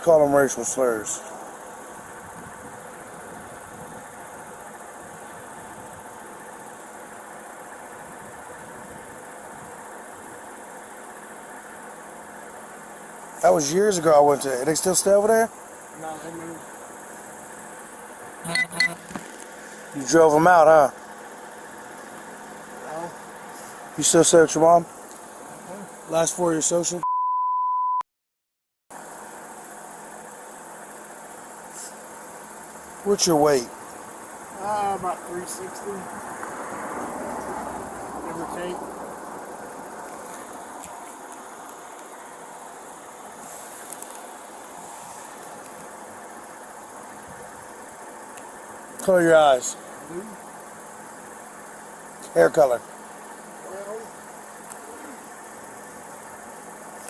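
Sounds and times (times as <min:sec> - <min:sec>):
car engine idling: 0:00.0 - 0:27.0, 0:28.9 - 0:57.0
censor beep: 0:18.4 - 0:19.1, 0:27.0 - 0:28.0
steady hiss: 0:29.1 - 0:36.3, 0:39.4 - 0:57.0.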